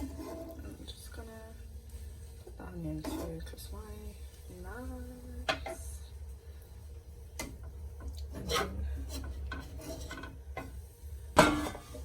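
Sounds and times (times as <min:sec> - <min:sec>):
utensil scraping a dish: 0:00.0 - 0:00.9, 0:02.9 - 0:03.6, 0:08.2 - 0:10.8
steady low hum: 0:00.0 - 0:12.0.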